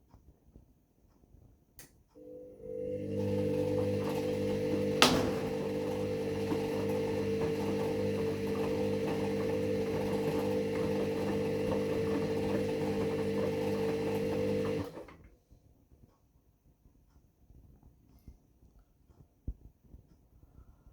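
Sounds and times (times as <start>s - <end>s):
small motor humming: 2.2s - 15.0s.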